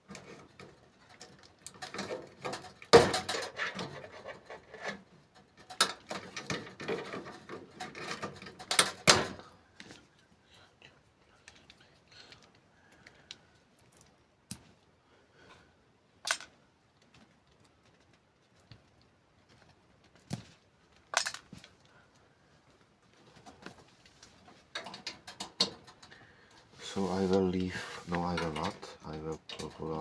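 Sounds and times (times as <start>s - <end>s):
computer parts clicking and knocking: 0.1s - 9.4s, 24.7s - 26.1s, 28.2s - 30.0s.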